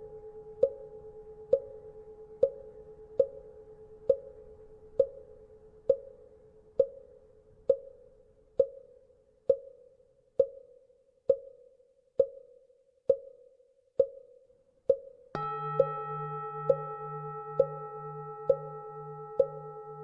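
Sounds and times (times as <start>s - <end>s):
faint bell hum: 0.0s - 7.3s, 15.4s - 20.0s.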